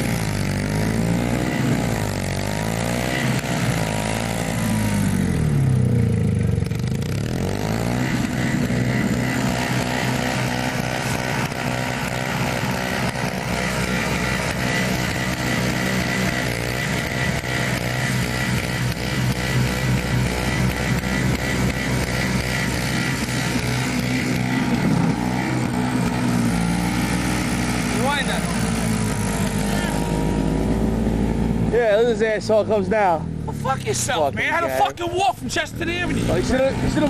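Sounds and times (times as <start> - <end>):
small two-stroke engine running: 0.0 - 37.0.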